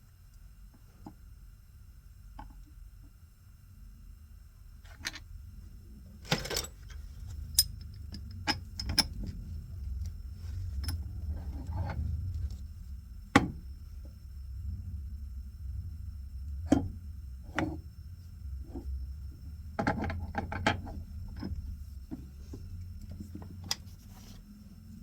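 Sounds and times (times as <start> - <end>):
low hum: 3.7 - 25.0
metal tools clinking: 6.3 - 7.8.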